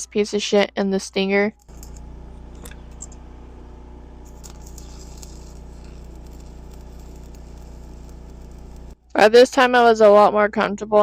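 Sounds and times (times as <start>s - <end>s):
constant low hum: 1.5s - 9.2s
welding arc crackling: 1.6s - 9.2s.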